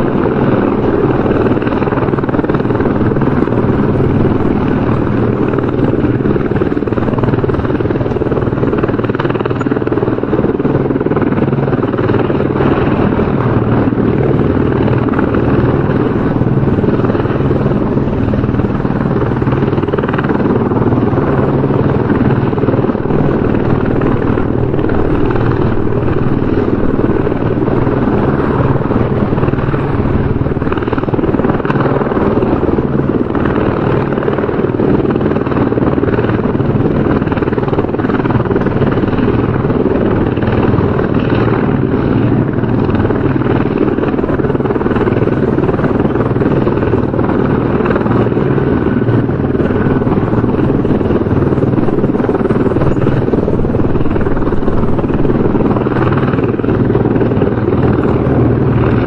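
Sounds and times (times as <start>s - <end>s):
helicopter rotor and engine: 0.0s - 59.0s.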